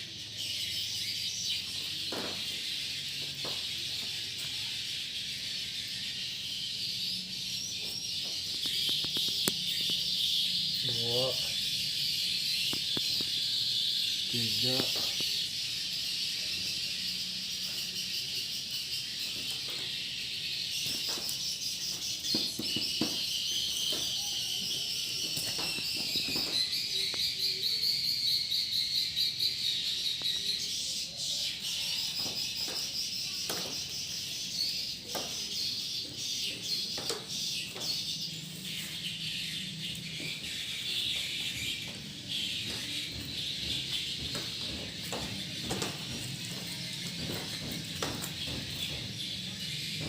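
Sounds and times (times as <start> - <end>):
swiftlets twittering: 4.8 - 31.2.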